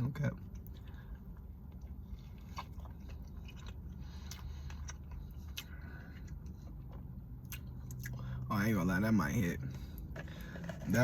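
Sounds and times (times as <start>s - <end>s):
person chewing: 0.4s - 8.4s.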